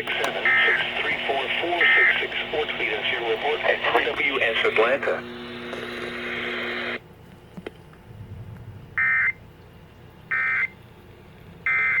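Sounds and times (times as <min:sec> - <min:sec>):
steady radio noise and hum: 0:00.0 - 0:07.0
faint static: 0:00.0 - 0:11.7.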